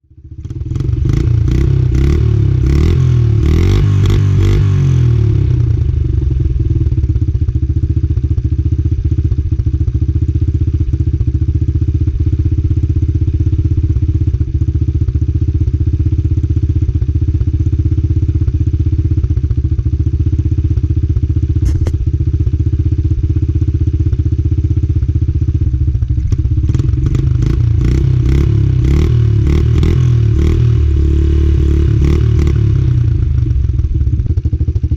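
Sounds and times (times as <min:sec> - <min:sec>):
motorcycle engine running: 0:00.0 - 0:34.9.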